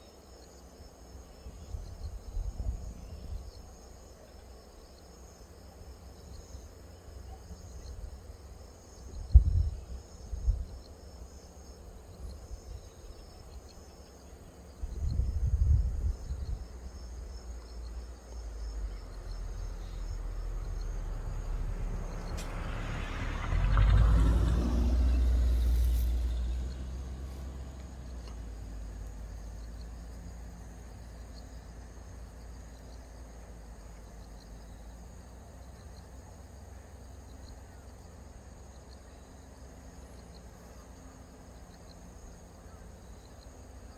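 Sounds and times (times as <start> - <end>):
crickets chirping: 0.0 - 43.9
low rumbles on microphone: 9.2 - 10.7
vehicle approaching: 18.5 - 32.8.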